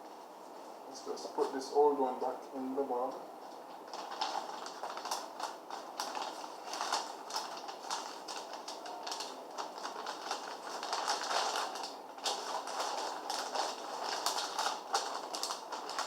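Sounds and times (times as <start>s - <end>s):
plastic bag crinkling: 3.6s - 16.0s.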